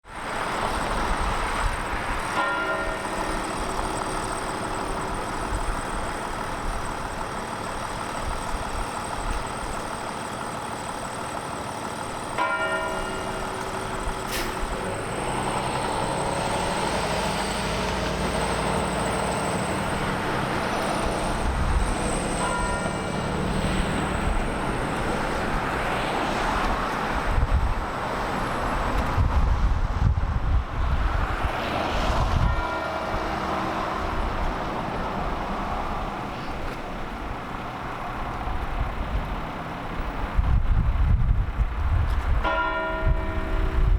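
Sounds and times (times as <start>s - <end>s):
street traffic noise: 0.0s - 43.9s
large church bell tolling: 2.4s - 5.2s, 12.4s - 14.6s, 22.1s - 23.5s, 32.4s - 34.3s, 42.4s - 43.9s.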